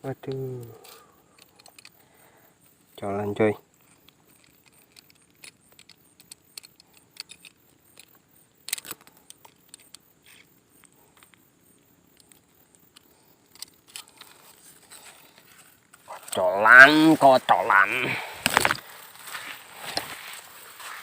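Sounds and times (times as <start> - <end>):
rustle: 0.0 - 21.0
fishing tackle clicking and rattling: 0.2 - 2.0, 3.7 - 11.4, 12.0 - 18.8.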